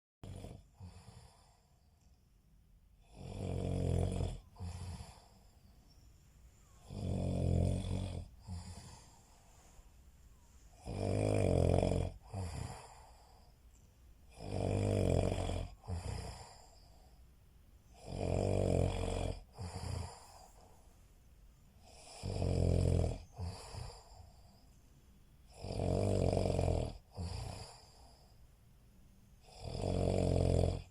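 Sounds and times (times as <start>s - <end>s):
man snoring: 0.2s - 1.7s, 3.0s - 5.5s, 6.6s - 9.4s, 10.8s - 13.5s, 14.3s - 17.0s, 17.9s - 20.7s, 21.8s - 24.6s, 25.5s - 28.3s, 29.4s - 30.9s.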